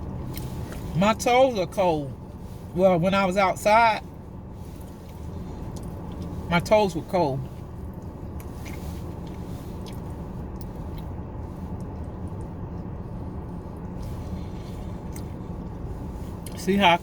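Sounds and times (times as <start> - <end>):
low hum inside a car: 0.0 - 17.0.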